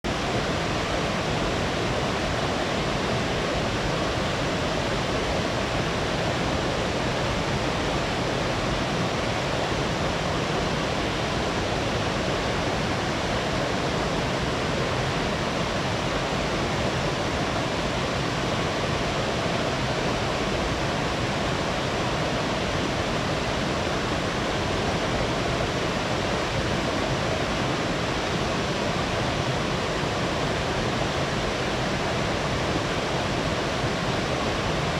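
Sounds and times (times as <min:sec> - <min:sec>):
waterfall roaring: 0:00.0 - 0:34.9.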